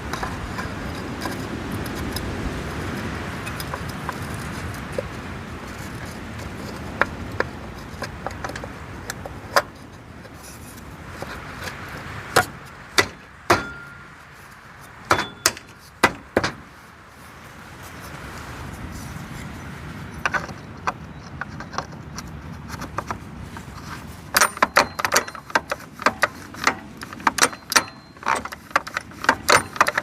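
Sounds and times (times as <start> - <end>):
metallic clinks of tools: 13.6 - 14.2, 15.2 - 15.7, 24.4 - 30.0.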